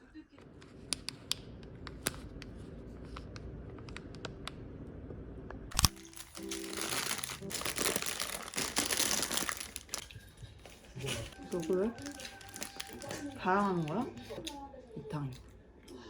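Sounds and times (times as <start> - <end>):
plastic packaging crinkling: 5.7 - 14.6
soft piano music: 5.8 - 15.0.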